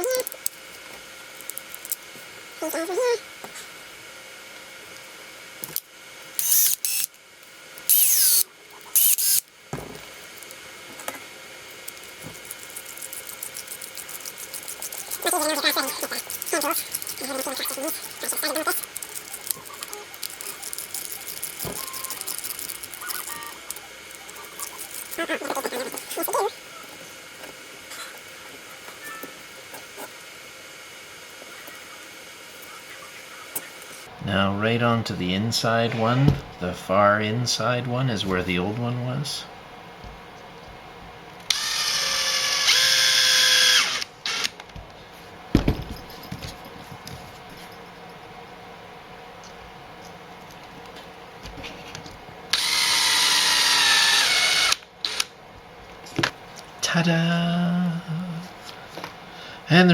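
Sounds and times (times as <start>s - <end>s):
cordless drill motor whine: 6.4s - 7.2s, 7.9s - 9.5s, 41.5s - 44.6s, 52.5s - 55.3s
small parts clicking and tapping: 11.8s - 25.2s
faint short squeaks: 21.6s - 22.4s.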